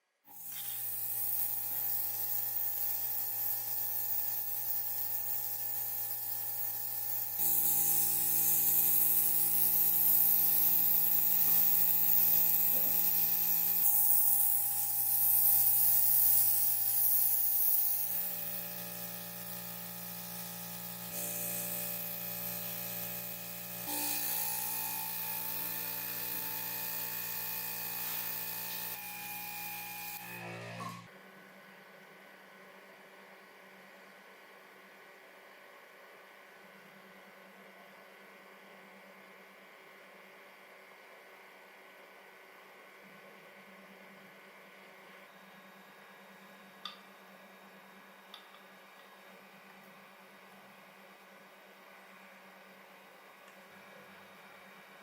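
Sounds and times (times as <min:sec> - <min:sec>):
electric motor hum with hiss: 0:00.3 - 0:31.1.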